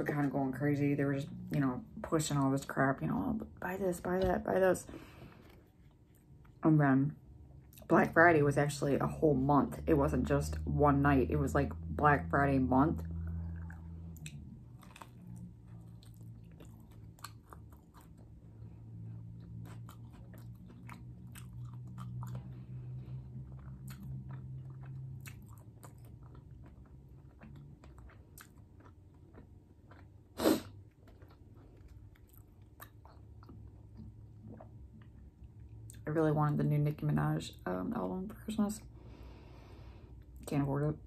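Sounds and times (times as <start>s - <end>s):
low hum: 0.0s - 41.0s
chewing food: 5.0s - 6.6s, 13.0s - 36.0s.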